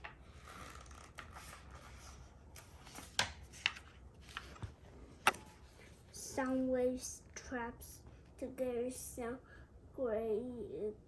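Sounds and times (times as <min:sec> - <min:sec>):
paper rustling: 0:00.0 - 0:06.0.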